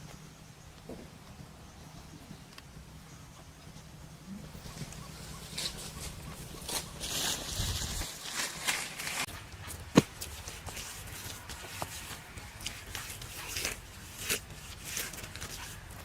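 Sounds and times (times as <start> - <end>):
rustling and shuffling: 3.6 - 16.0.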